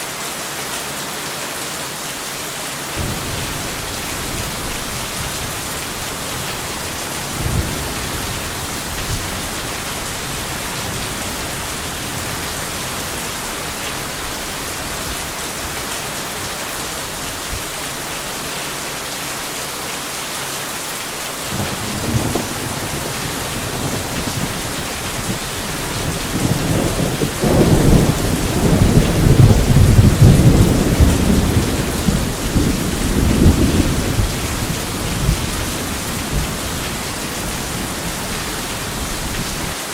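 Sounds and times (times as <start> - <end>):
steady rain hissing: 0.0 - 39.9
thunder rumble: 3.0 - 15.9, 21.5 - 39.8.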